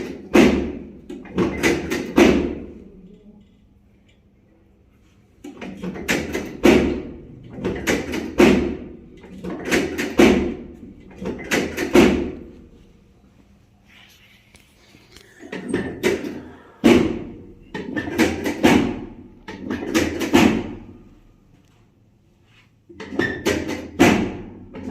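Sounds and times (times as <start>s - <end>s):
treatment table knocks and thuds: 0.0s - 2.7s, 5.6s - 12.6s, 15.6s - 20.9s, 23.0s - 24.9s.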